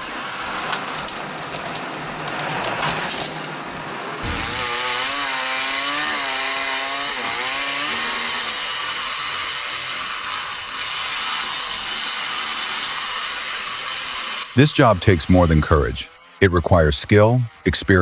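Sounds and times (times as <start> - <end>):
small high-revving engine: 4.2 - 14.6.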